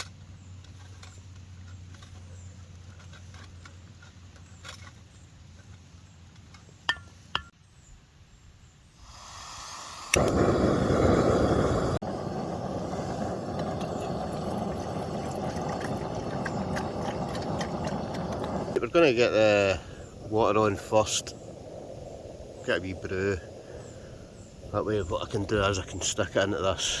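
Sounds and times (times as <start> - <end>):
camping stove burner hissing: 8.9 - 27.0.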